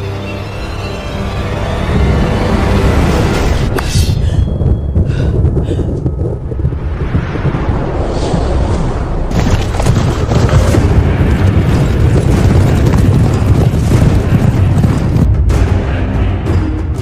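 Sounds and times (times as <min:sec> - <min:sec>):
low rumbling with booms: 0:03.9 - 0:16.0.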